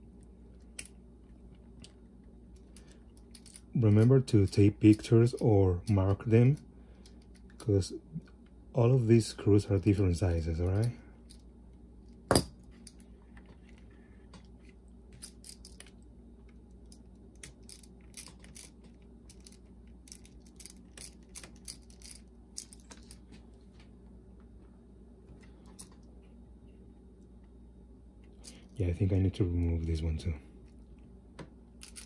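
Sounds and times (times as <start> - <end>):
low steady hum: 0.0 - 32.0
small parts handled: 0.6 - 6.2, 12.1 - 23.4, 31.8 - 32.0.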